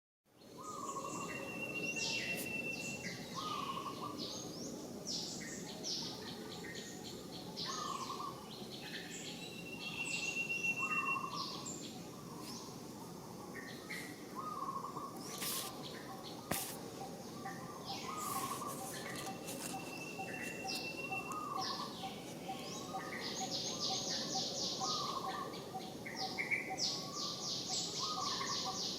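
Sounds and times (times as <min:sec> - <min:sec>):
outdoor background noise: 0:00.3 - 0:28.9
birds chirping: 0:00.4 - 0:05.7, 0:13.4 - 0:28.9
low bird whistle: 0:00.7 - 0:03.1, 0:09.6 - 0:11.4.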